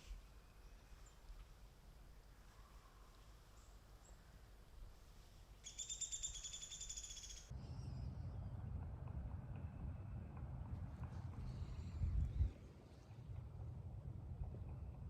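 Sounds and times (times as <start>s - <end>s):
birds chirping: 5.6s - 8.0s
steady low noise: 7.5s - 15.0s.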